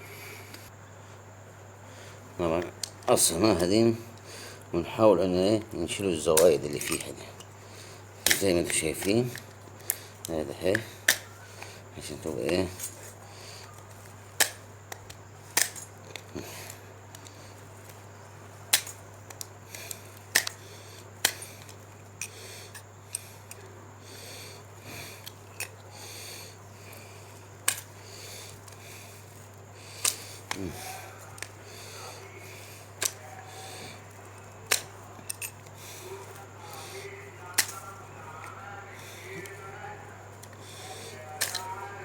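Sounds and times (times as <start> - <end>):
steady low hum: 0.0 - 42.0
plastic clicks and snaps: 2.6 - 4.3, 8.2 - 18.1, 18.7 - 23.7, 25.1 - 25.8, 26.9 - 39.7, 40.4 - 41.9.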